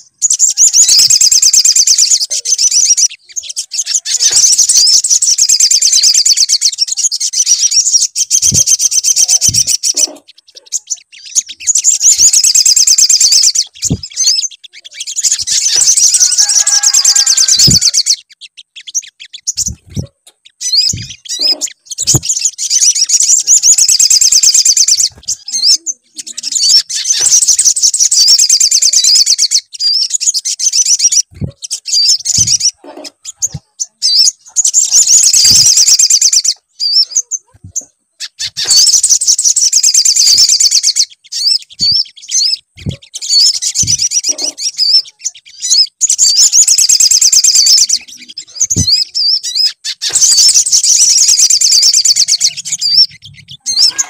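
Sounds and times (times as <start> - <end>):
high-pitched bird trilling: 0.0 - 54.0
low thumps: 13.8 - 14.2, 20.8 - 21.2.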